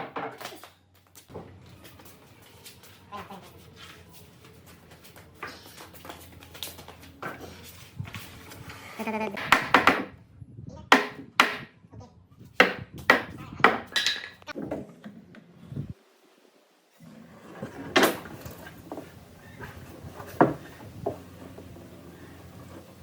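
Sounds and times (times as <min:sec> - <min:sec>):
sharp knocks on wood: 0:10.9 - 0:11.7, 0:12.6 - 0:13.9.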